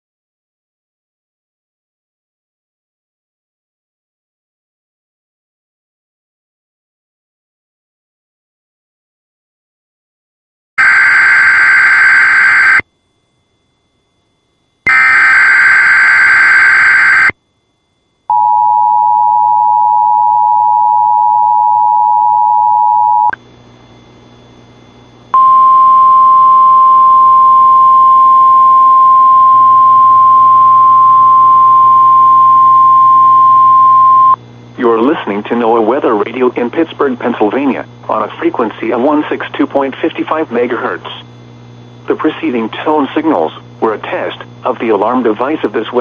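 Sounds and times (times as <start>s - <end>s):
buzzing digital data bursts: 10.8s - 12.8s, 14.9s - 17.3s
steady alarm tone: 10.8s - 23.3s
faint hum: 10.8s - 46.0s.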